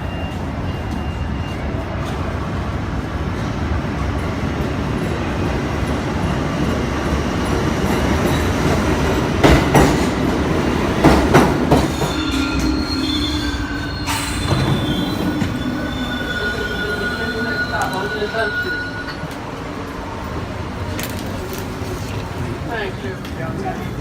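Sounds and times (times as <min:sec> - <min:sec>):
subway train rumbling: 0:00.0 - 0:24.0
high wheel squeal: 0:11.6 - 0:19.4.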